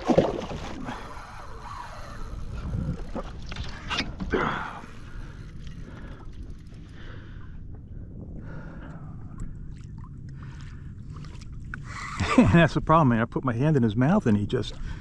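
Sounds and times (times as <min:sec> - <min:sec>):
fish thrashing in water: 0:00.0 - 0:01.5
water splashing: 0:00.0 - 0:06.1.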